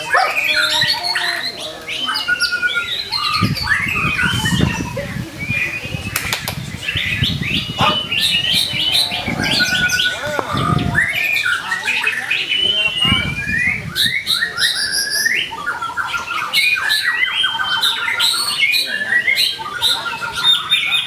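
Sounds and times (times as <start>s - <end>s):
bird singing: 0.0s - 21.0s
low rustling thumps: 3.4s - 11.3s, 12.6s - 14.3s.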